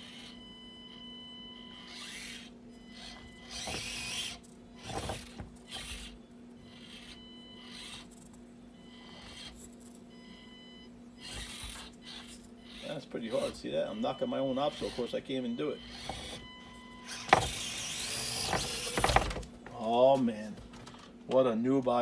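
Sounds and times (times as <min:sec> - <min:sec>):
small electric motor whining: 0:00.0 - 0:21.1
clattering knocks: 0:17.1 - 0:21.1.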